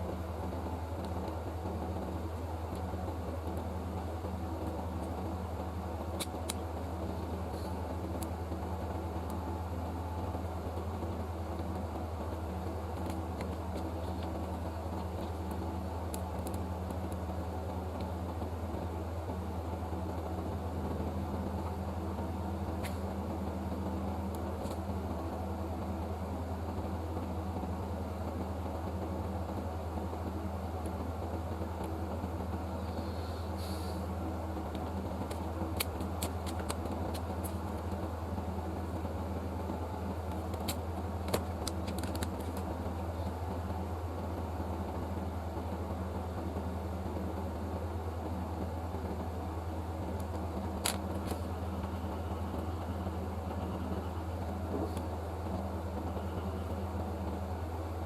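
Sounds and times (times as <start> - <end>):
equipment humming and whirring: 0.0 - 58.0
light clicks and taps: 34.7 - 38.0, 40.3 - 42.7.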